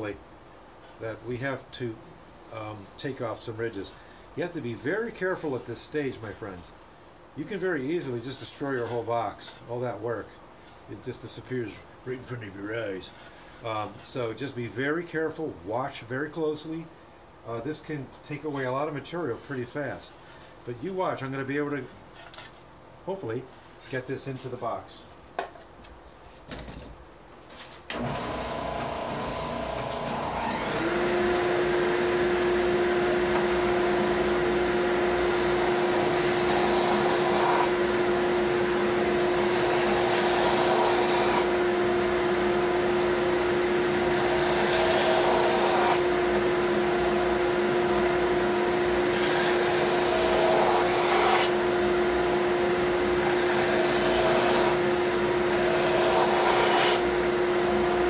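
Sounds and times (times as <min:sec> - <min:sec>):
power sander motor hum: 0:27.9 - 0:58.0.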